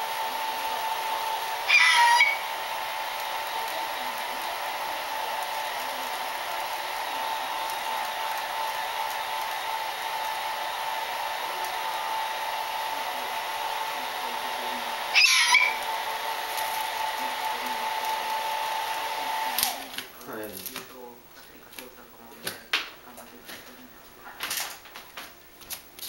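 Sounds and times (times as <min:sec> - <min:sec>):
hair dryer running: 0:00.0 - 0:21.9
high-pitched animal call: 0:01.6 - 0:02.5, 0:15.1 - 0:15.8.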